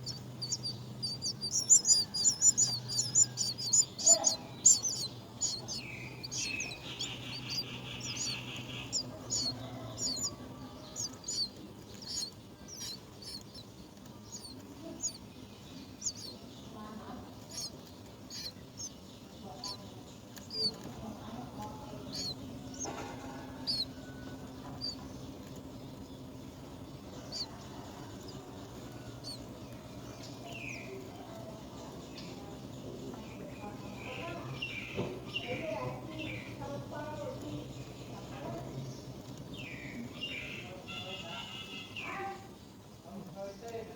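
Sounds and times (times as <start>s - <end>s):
buzzy bird call: 0.0s - 19.8s, 20.5s - 25.1s
birds chirping: 0.0s - 43.9s.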